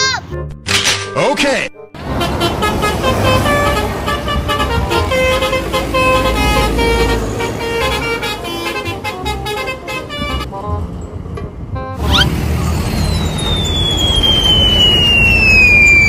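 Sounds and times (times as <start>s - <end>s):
multi-tone bus horn melody: 2.0s - 10.9s.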